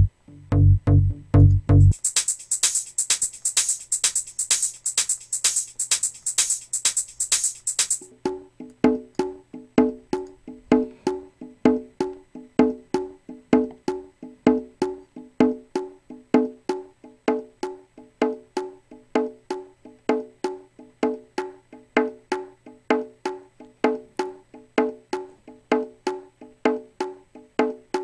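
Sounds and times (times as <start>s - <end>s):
steady low tone: 0.0s - 2.0s
hi-hat ticks: 1.9s - 9.3s.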